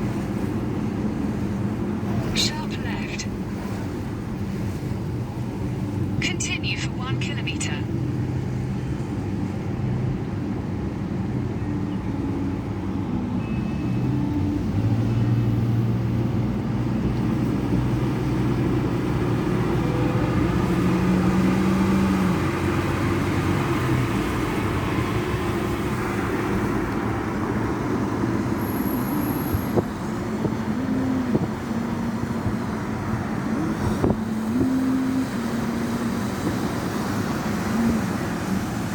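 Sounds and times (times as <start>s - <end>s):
road noise: 0.0s - 38.9s
vehicle engines running: 0.0s - 38.9s.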